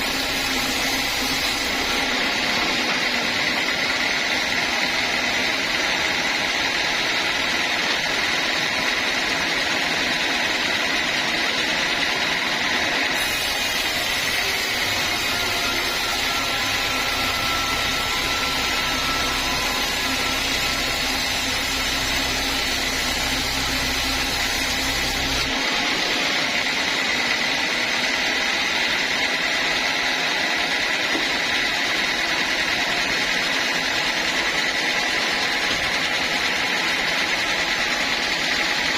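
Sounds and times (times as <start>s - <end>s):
sawmill saw whining: 0.0s - 38.9s
deeper heavier machine sound: 14.4s - 27.7s.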